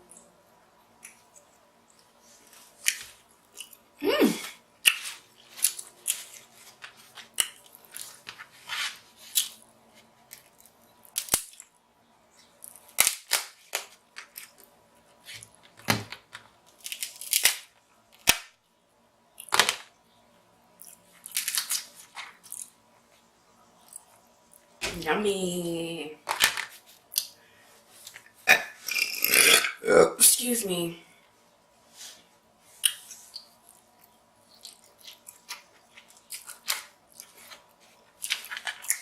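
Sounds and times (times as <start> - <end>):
crab shells cracking: 10.3 - 11.7, 12.7 - 14.6, 16.4 - 18.5, 20.9 - 22.7.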